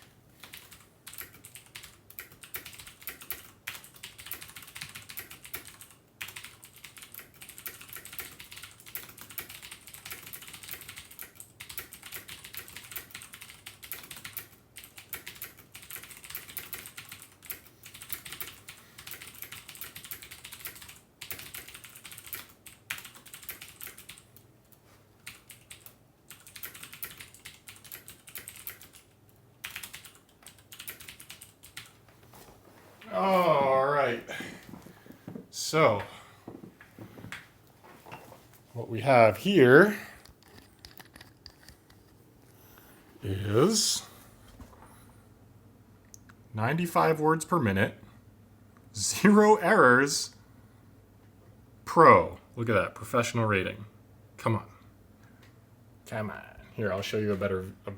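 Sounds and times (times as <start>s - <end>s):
fast typing on keyboard: 0.4s - 24.4s, 25.2s - 32.0s.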